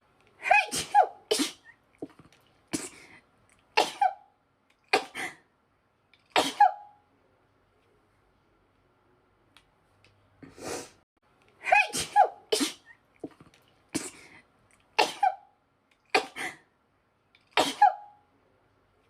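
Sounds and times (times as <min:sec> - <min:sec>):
woman sneezing: 0:00.4 - 0:01.7, 0:03.8 - 0:04.2, 0:06.4 - 0:06.9, 0:11.6 - 0:12.9, 0:15.0 - 0:15.4, 0:17.6 - 0:18.1.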